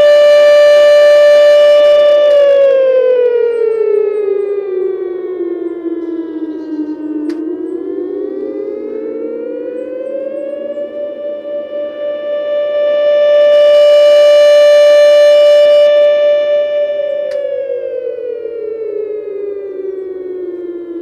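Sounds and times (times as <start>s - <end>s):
siren click: 0.0s - 4.1s, 5.7s - 7.9s, 12.9s - 18.7s
mechanical siren wailing: 0.0s - 21.0s.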